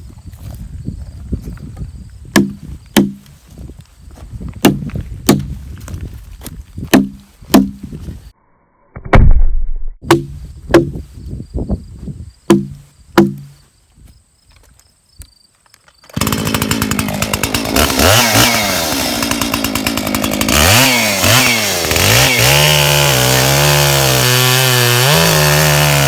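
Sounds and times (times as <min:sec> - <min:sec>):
sharp ringing knocks: 0:02.4 - 0:03.2, 0:10.0 - 0:11.0, 0:12.5 - 0:13.6
heavy low thump: 0:06.8 - 0:08.0, 0:09.0 - 0:11.1, 0:12.5 - 0:13.6.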